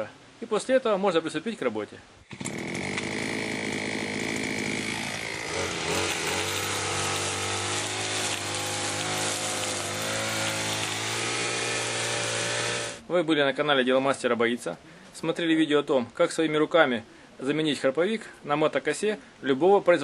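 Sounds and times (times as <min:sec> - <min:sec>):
brush cutter engine running: 0:02.3 - 0:13.0.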